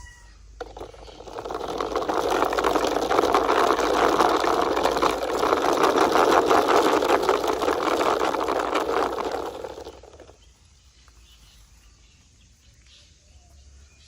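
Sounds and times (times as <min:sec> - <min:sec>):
toy rickshaw wheels rattling whirr: 0:00.4 - 0:10.6.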